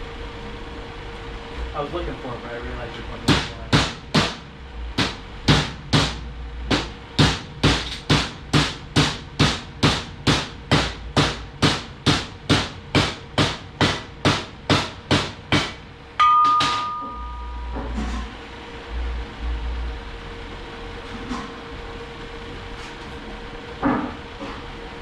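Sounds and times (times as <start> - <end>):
hammer blows: 5.0 - 18.3
ringing metallic hit: 16.2 - 18.0.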